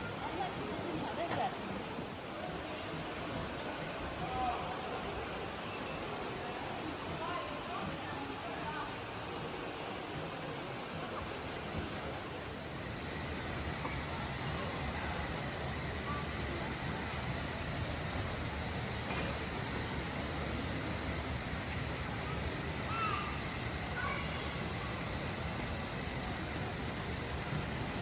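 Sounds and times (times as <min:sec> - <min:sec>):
steady rushing noise: 0:11.2 - 0:28.0.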